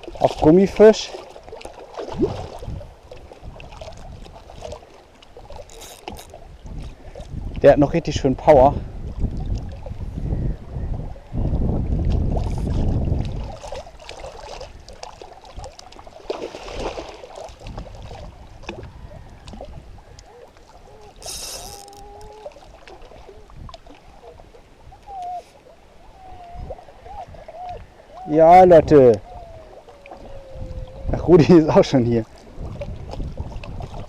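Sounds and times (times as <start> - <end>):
water sloshing around boat: 0.0 - 10.2, 11.9 - 34.0
short splash: 1.1 - 2.8, 12.3 - 18.8.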